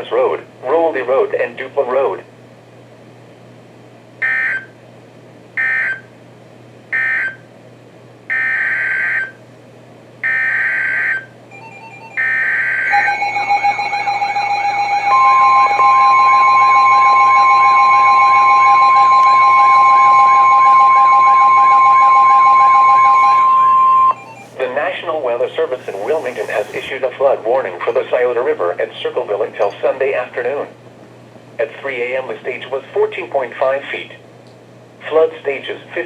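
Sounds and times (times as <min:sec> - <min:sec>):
steady warning alarm tone: 0:04.2 - 0:04.8, 0:05.6 - 0:06.1, 0:06.9 - 0:07.4, 0:08.3 - 0:09.4, 0:10.2 - 0:26.9
pulsing wavering alert sound: 0:11.7 - 0:24.6.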